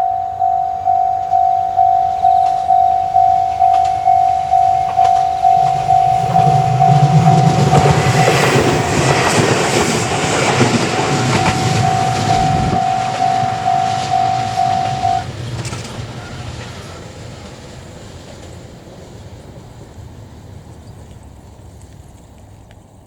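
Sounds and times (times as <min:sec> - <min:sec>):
level crossing electronic bell: 0:00.0 - 0:09.4, 0:11.0 - 0:15.3
train wheels running: 0:00.0 - 0:21.0.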